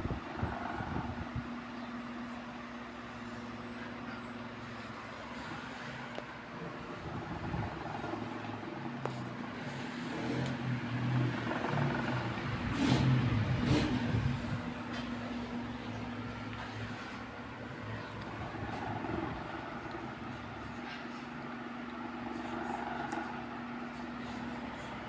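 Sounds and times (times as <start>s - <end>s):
electric fan motor hum: 0.0s - 25.0s
rush of air from fan blades: 4.6s - 21.2s.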